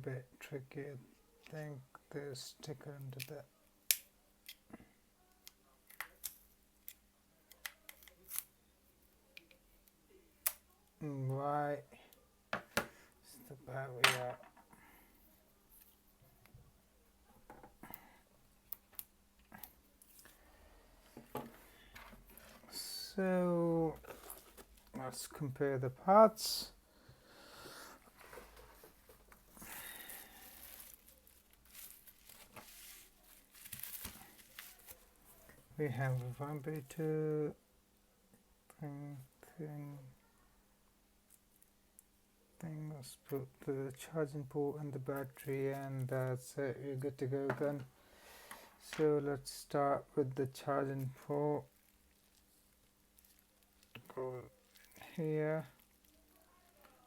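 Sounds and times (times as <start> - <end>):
soft rustles: 28.0 - 36.4.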